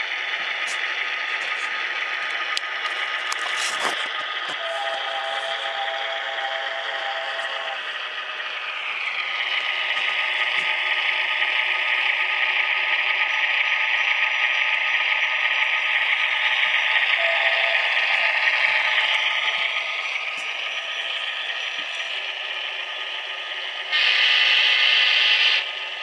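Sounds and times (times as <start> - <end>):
diesel sounds from small speaker: 0.0 - 26.0
model motor whirring: 16.6 - 25.9.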